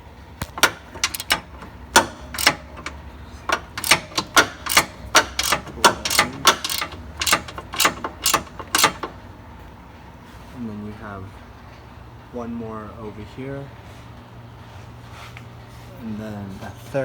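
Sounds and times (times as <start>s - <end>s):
hand ratchet clicking: 0.4s - 9.2s.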